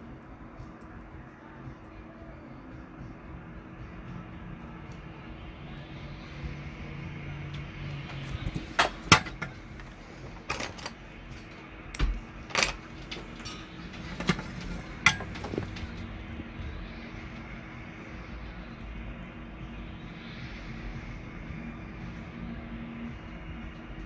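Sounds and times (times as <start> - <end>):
steady machine hum: 0.0 - 24.0
small metal tools clicking: 8.1 - 16.0.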